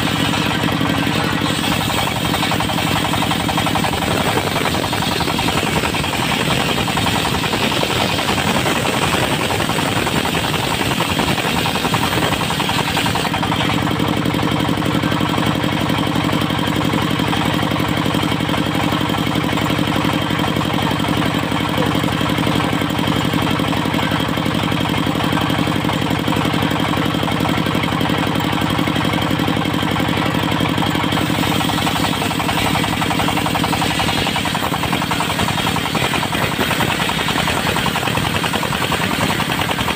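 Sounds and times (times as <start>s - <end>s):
high-pitched saw whine: 0.0s - 13.9s, 31.2s - 39.9s
diesel engine knocking drone: 0.0s - 39.9s.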